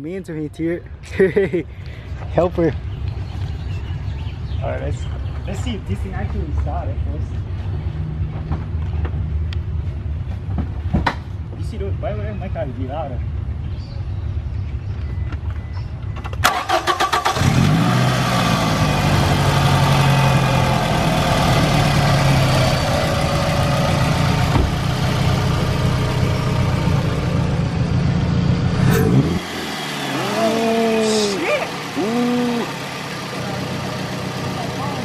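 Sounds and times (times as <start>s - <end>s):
starter cranking engine: 16.4s - 17.8s
car engine running: 17.3s - 35.0s.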